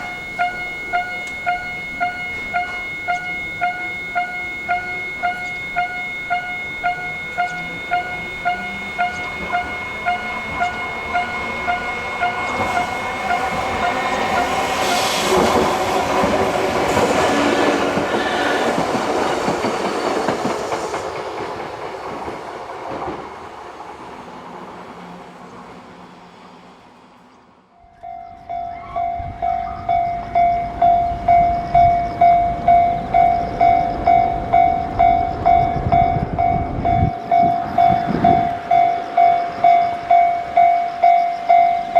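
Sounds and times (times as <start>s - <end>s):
level crossing alarm ringing: 0.0s - 19.1s, 27.8s - 41.9s
train passing: 0.0s - 41.9s.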